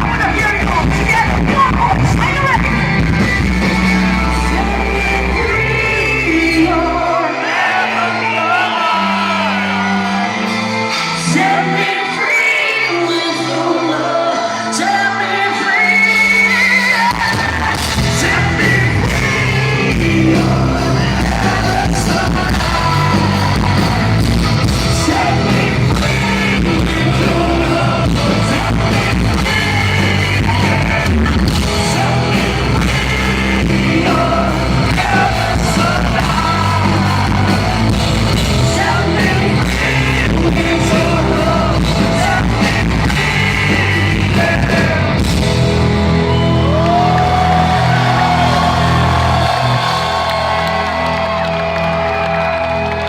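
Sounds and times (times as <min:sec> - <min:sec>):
person singing: 0:00.0 - 0:45.6
metal band playing live: 0:00.0 - 0:53.0.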